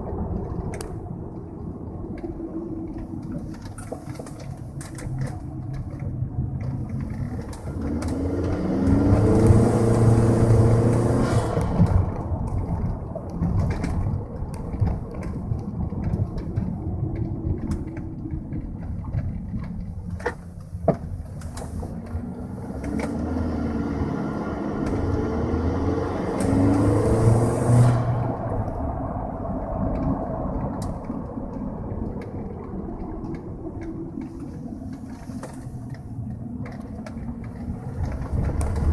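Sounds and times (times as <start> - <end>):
road noise: 0.0 - 38.9
car engine accelerating: 4.3 - 15.0, 21.5 - 38.9.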